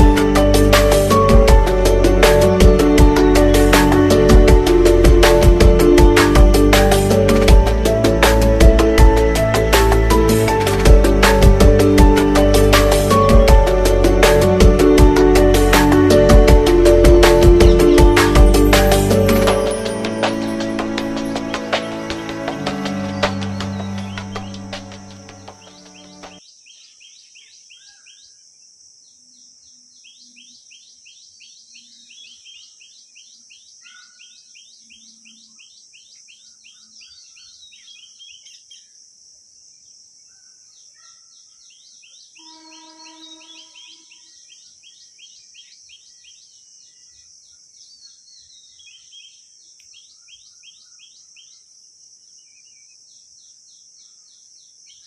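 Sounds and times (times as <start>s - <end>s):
long multi-tone bird call: 18.6s - 28.5s, 29.1s - 39.0s, 40.3s - 55.0s
rapid bird chirps: 29.1s - 39.0s, 40.3s - 51.7s.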